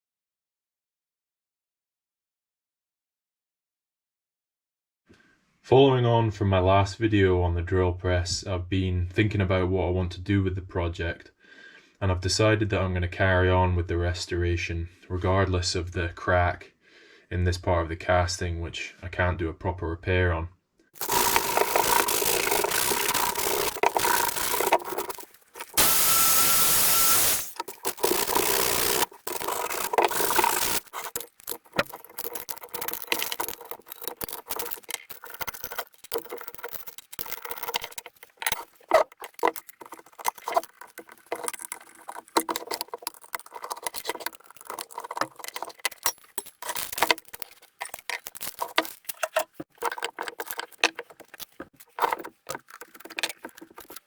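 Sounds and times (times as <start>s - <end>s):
grinding tool with hum: 21.0s - 31.2s
metal parts clicking and scraping: 21.0s - 54.0s.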